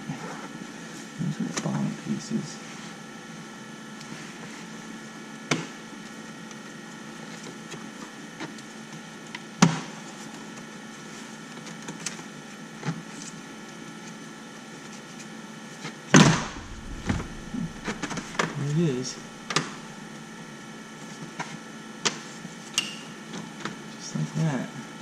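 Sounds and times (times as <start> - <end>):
steady hum: 16.3 - 20.7.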